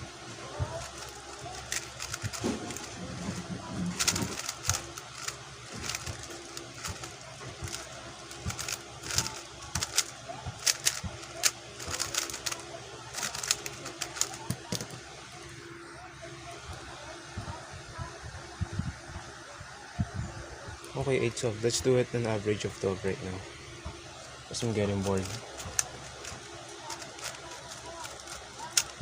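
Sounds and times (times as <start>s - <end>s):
puzzle cube clicking: 0.8s - 15.0s, 25.1s - 29.0s.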